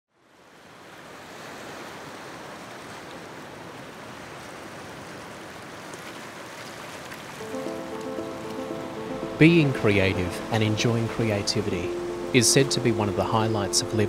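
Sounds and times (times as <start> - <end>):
ocean waves washing: 7.0 - 14.0.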